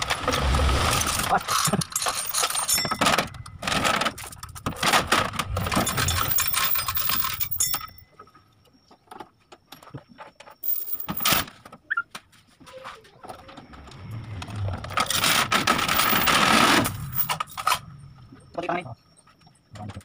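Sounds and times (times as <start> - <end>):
loose metal parts rattling: 0.9 - 8.1, 10.0 - 11.7, 14.5 - 17.8.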